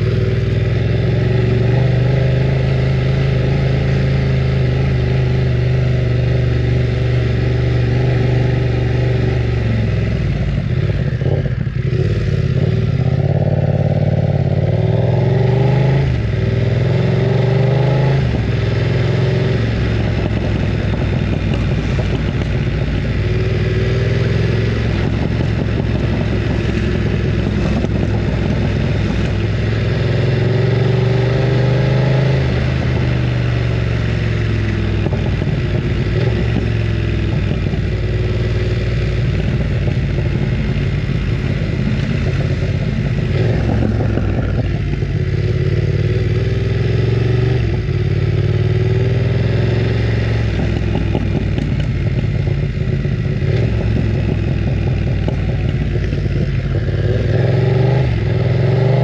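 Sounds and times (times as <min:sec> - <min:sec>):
motorcycle engine revving: 0:00.0 - 0:59.0.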